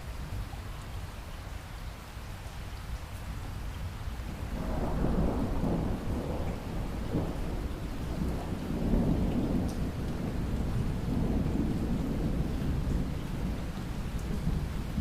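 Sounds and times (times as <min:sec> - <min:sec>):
heavy pouring rain: 0:00.0 - 0:15.0
rolling thunder: 0:04.4 - 0:15.0.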